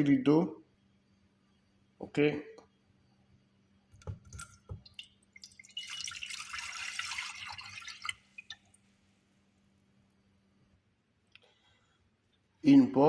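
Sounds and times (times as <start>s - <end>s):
water poured into saucepan: 4.4s - 8.7s.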